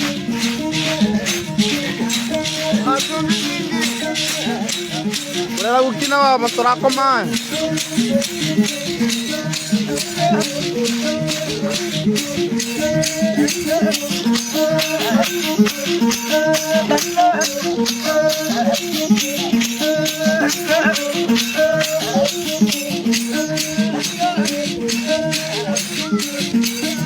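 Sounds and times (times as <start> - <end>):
background music with shaker rhythm: 0.0 - 27.0.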